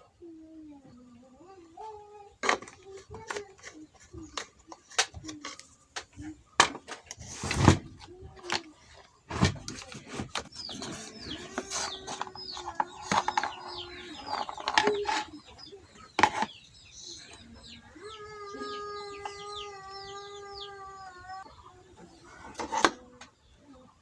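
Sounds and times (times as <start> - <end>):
birds chirping: 0.0 - 24.0
handling clicks and knocks: 2.4 - 8.7, 9.3 - 15.4.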